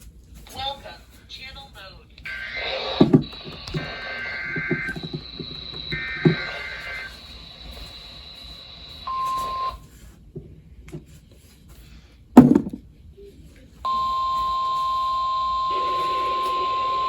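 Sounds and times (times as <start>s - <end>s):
receiver hiss: 1.8s - 10.1s, 13.9s - 17.0s
steady alarm tone: 2.3s - 9.8s, 13.9s - 17.0s
short electronic beep: 9.0s - 9.8s.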